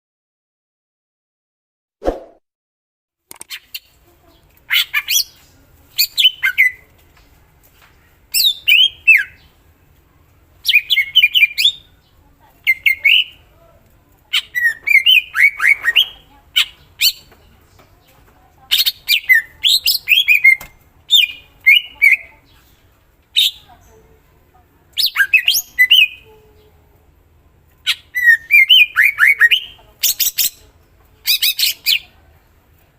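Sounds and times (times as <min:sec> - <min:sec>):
bird singing chattering phrases: 0:03.5 - 0:05.4, 0:06.0 - 0:06.8, 0:08.3 - 0:09.5, 0:10.6 - 0:13.5, 0:14.3 - 0:17.8, 0:18.7 - 0:24.1, 0:25.0 - 0:26.8, 0:27.8 - 0:32.2.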